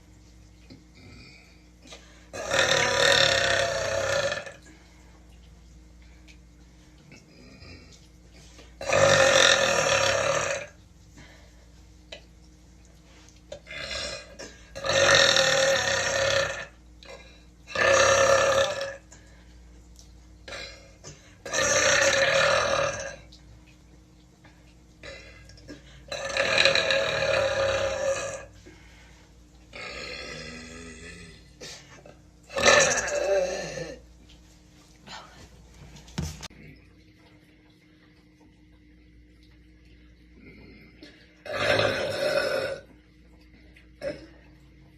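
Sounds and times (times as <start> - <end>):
woman burping: 13.6 - 19.0, 20.4 - 23.2, 29.8 - 34.0, 41.4 - 42.9.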